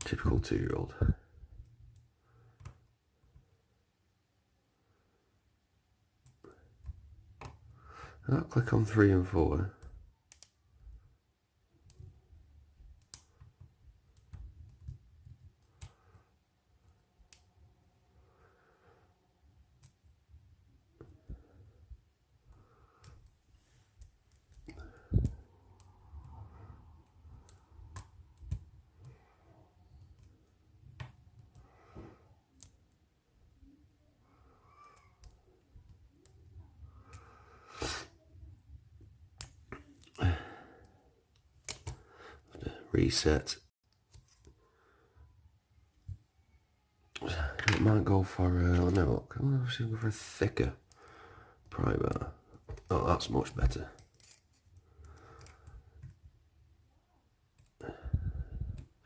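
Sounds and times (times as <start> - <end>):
light scraping of lock pick: 54.0 - 55.8.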